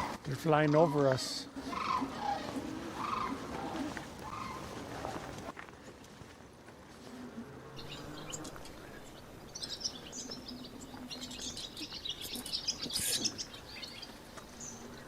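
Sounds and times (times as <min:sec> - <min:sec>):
cranes calling: 0:00.0 - 0:05.5.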